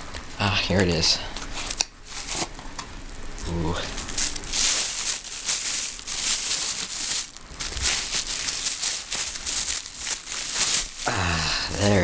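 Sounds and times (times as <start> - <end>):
plastic packaging crinkling: 1.5 - 12.0.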